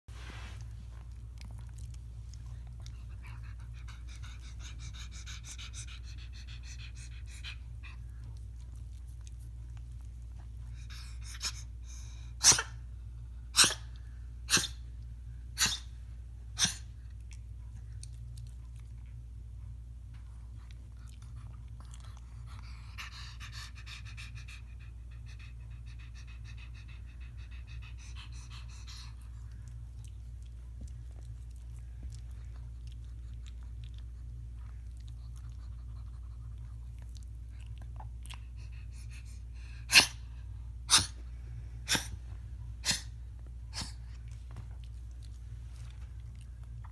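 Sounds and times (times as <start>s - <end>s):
dog sneezing: 12.4s - 12.8s, 13.5s - 13.9s, 14.5s - 14.8s, 15.6s - 16.0s, 16.6s - 16.9s, 39.9s - 40.3s, 40.9s - 41.2s, 41.8s - 44.1s.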